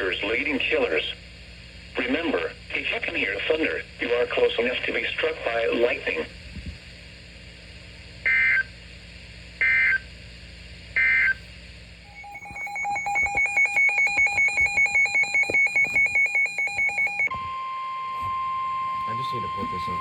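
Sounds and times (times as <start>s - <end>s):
digital data tone bursts: 12.1s - 17.3s
pulsing electronic alert tone: 12.1s - 17.3s.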